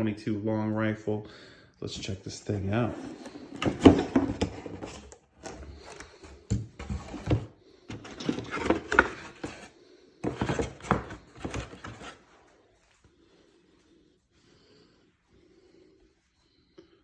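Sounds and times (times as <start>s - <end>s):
packaging rustling and knocks: 2.9s - 12.2s.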